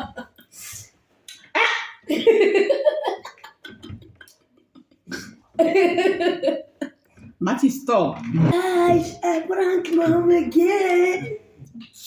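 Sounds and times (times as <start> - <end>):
boy making throaty burp noises: 8.2 - 9.2.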